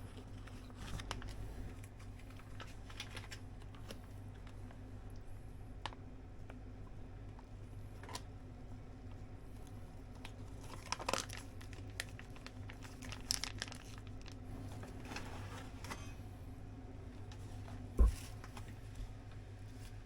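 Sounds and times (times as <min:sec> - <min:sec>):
crinkling and rustling: 0:00.0 - 0:06.6, 0:07.2 - 0:08.3, 0:09.0 - 0:16.3, 0:17.1 - 0:20.0
low steady hum: 0:00.0 - 0:20.0.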